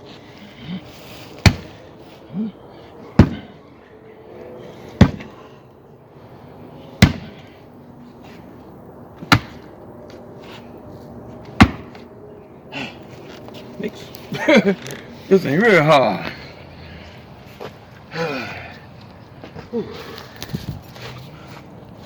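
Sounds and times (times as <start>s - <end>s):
axe chopping into stump: 1.4s - 1.7s, 3.2s - 3.5s, 5.0s - 5.3s, 7.0s - 7.3s, 9.2s - 9.6s, 11.6s - 11.9s.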